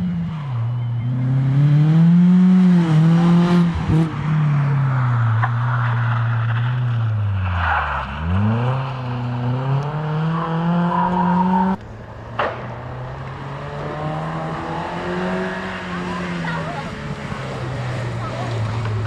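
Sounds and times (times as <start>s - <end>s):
rally car engine revving: 0.0s - 19.0s
sharp crack: 11.7s - 13.9s.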